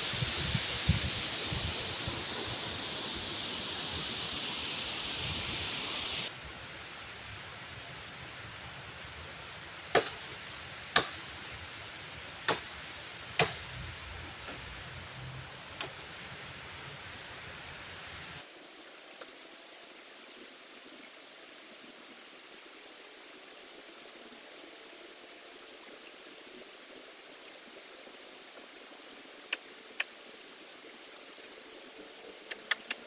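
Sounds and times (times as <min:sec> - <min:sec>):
wind noise: 0:00.0 - 0:06.3.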